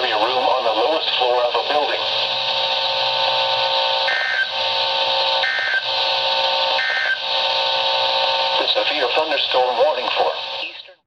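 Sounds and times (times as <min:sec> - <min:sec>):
steady buzzing hum: 0:00.0 - 0:11.0
warbling data bursts: 0:04.0 - 0:04.8, 0:05.4 - 0:05.9, 0:06.8 - 0:07.3.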